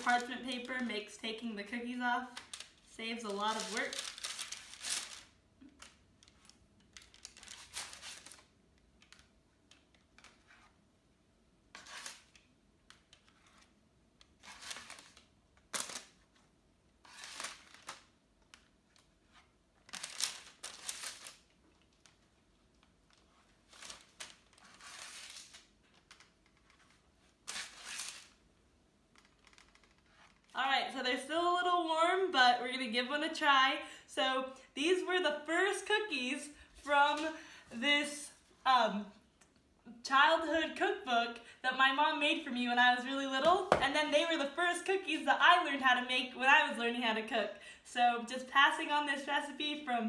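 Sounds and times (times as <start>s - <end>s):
spatula scraping on parchment paper: 24.5s - 25.5s.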